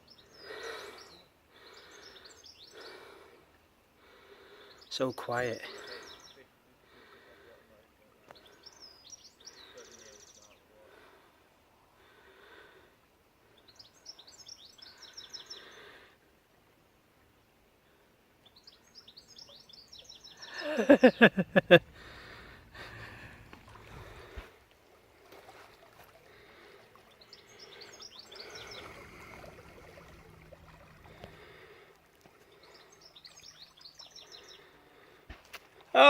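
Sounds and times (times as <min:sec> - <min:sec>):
small birds chirping: 0:00.0 - 0:03.4, 0:04.2 - 0:06.5, 0:08.1 - 0:11.0, 0:13.5 - 0:16.1, 0:18.4 - 0:24.6, 0:25.8 - 0:35.2.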